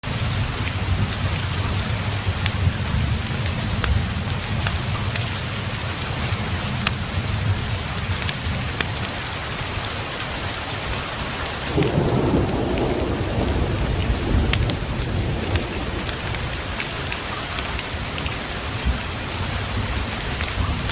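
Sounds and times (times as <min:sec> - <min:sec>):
heavy rain: 0:00.0 - 0:20.9
thunder rolling: 0:11.7 - 0:20.9.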